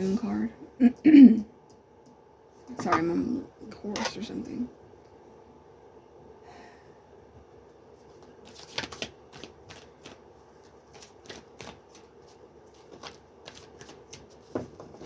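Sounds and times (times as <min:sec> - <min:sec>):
cards being shuffled: 0:08.0 - 0:14.6.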